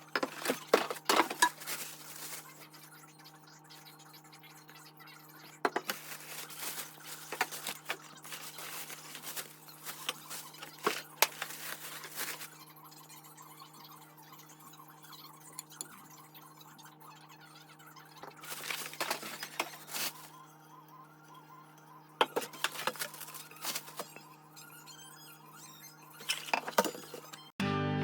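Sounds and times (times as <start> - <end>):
kitchenware clicks and scrapes: 0.0 - 2.6, 5.6 - 12.5, 18.2 - 20.3, 22.2 - 24.3, 26.2 - 27.5.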